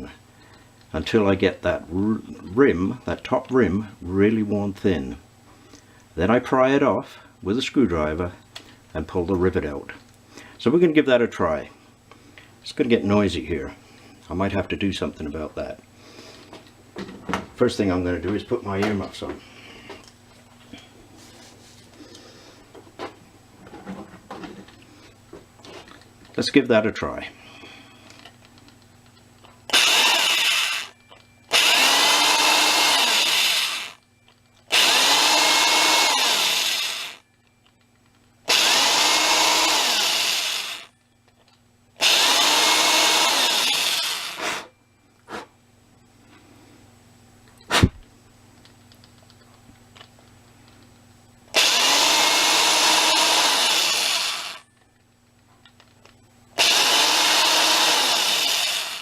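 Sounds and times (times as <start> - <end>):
electric drill boring into plastic: 29.7 - 34.0, 34.7 - 37.2, 38.5 - 40.9, 42.0 - 44.7, 51.5 - 54.6, 56.6 - 59.0.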